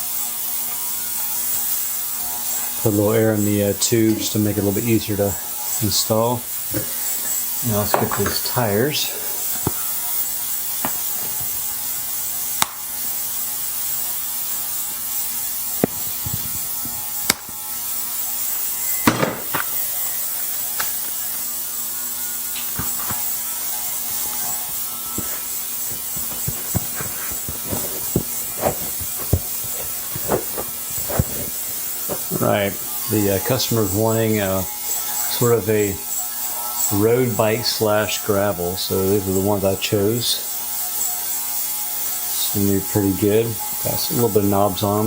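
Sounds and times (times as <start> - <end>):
mechanical hum with hiss: 0.0 - 45.0
bicycle tire clicks and rubbing: 6.7 - 21.6, 22.4 - 32.7.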